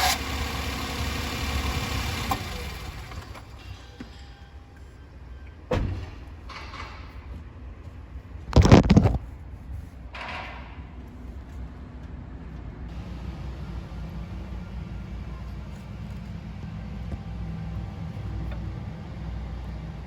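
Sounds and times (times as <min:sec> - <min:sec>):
van engine rumble: 0:00.0 - 0:04.0, 0:12.7 - 0:20.0.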